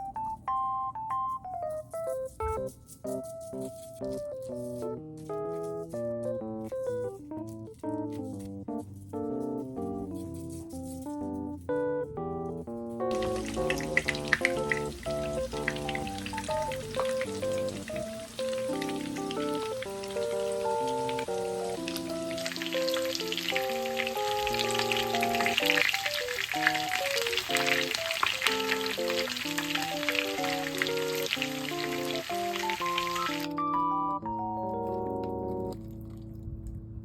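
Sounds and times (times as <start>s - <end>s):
light background music: 0.0s - 36.4s
oil sizzling in a pan: 13.1s - 33.5s.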